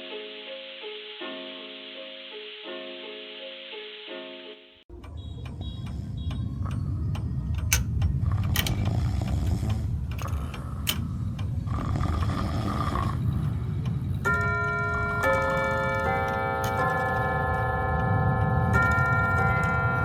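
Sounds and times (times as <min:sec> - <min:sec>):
high beeps: 0:04.9 - 0:07.5
sharp clicks and knocks: 0:04.9 - 0:11.6
low rumbling noise: 0:04.9 - 0:20.0.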